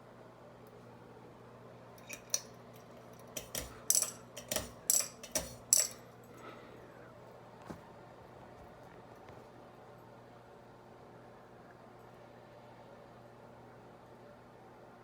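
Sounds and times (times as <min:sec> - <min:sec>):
faint steady hum: 0:00.0 - 0:15.0
sharp metallic clicks and rattles: 0:03.2 - 0:06.0.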